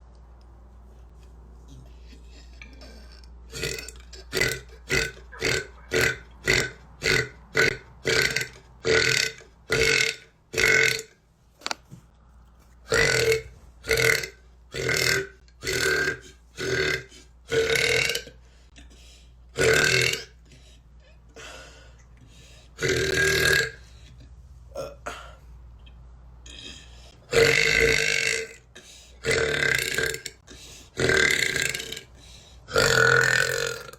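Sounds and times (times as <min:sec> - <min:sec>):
woman burping: 0:02.6 - 0:11.1.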